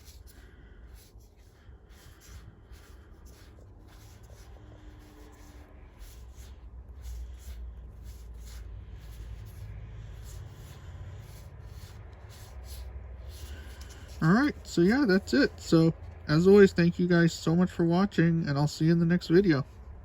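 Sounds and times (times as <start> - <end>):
cards rustling: 0.0 - 16.4.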